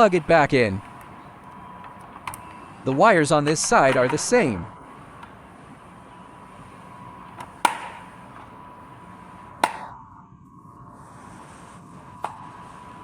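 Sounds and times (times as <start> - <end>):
wire connectors clicking: 0.0 - 4.6.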